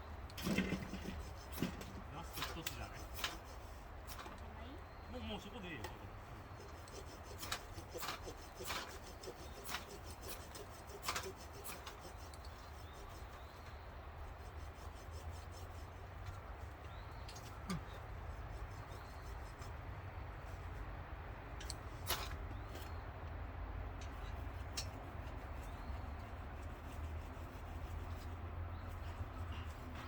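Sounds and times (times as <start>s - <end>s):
ferrocerium rod scrapes: 0.3s - 4.4s, 6.4s - 19.8s.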